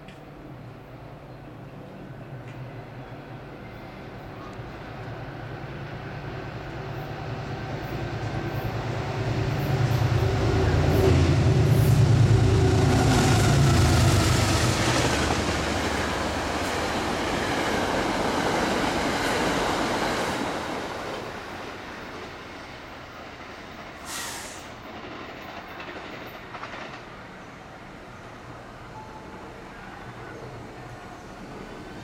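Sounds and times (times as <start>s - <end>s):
low locomotive hum: 0.0s - 23.3s
rushing wheel-on-rail noise: 0.1s - 32.0s.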